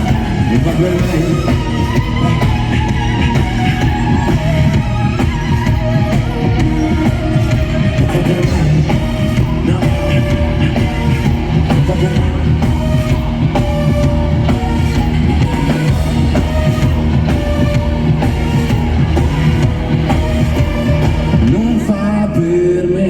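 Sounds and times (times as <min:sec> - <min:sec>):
drum kit beat: 0:00.0 - 0:22.0
live band music: 0:00.0 - 0:22.8.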